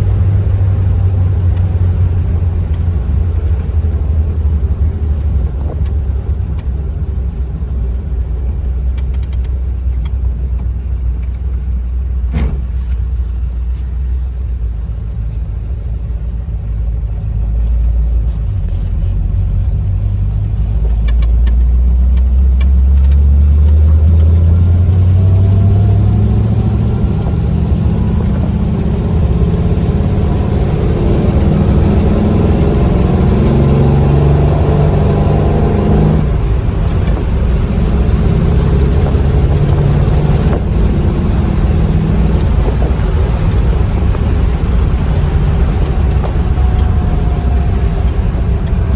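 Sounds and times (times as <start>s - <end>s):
car engine running: 0.0s - 48.9s
sharp clicks: 8.9s - 10.2s.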